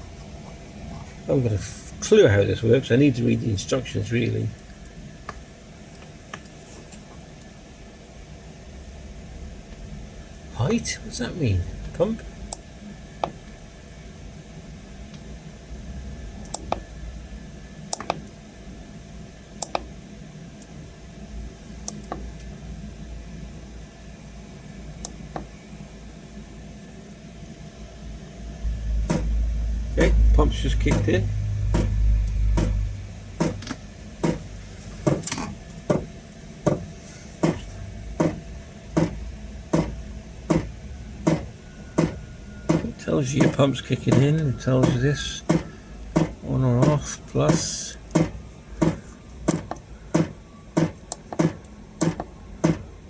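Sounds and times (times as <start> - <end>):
steady low hum: 0.0 - 53.0
fuel pump ticking: 30.8 - 31.1, 42.0 - 52.8.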